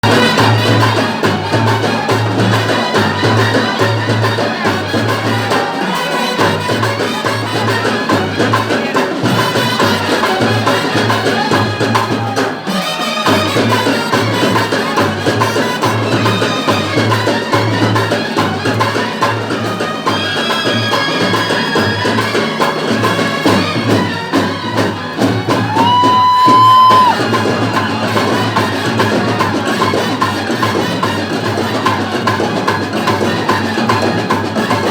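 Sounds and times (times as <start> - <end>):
percussion festival music: 0.0 - 34.9
bass drum beat: 25.5 - 27.3
held high note: 25.7 - 27.3.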